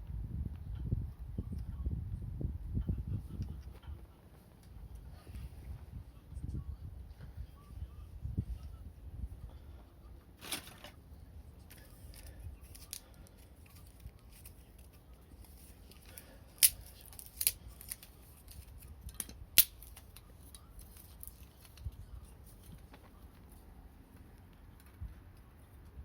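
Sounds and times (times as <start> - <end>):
wood fire crackling: 11.7 - 21.9
sharp pops and snaps: 16.6 - 20.0.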